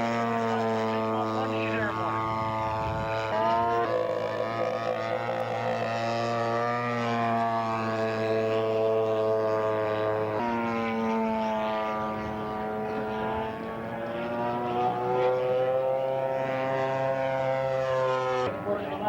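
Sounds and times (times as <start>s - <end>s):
model airplane engine buzzing: 0.0s - 19.0s.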